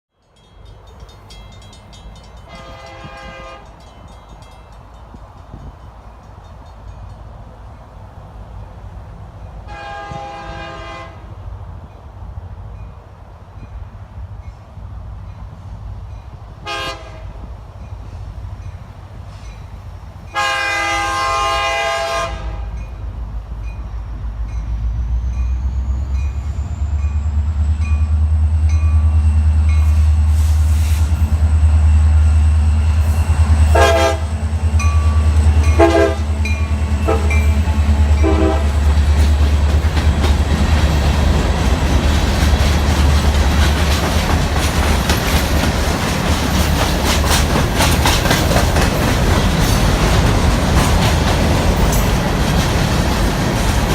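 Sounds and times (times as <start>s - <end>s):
rail cars rumbling past: 0.1s - 53.9s
locomotive horn: 2.5s - 3.8s, 9.7s - 11.3s, 16.6s - 17.4s, 20.3s - 22.8s, 33.0s - 39.0s
locomotive engine drone: 23.0s - 53.9s.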